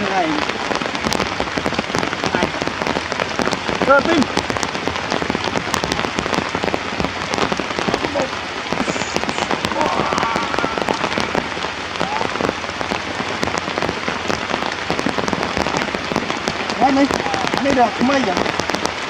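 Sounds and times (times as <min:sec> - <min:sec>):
rain pattering: 0:00.0 - 0:19.0
faint high calls: 0:08.8 - 0:12.5.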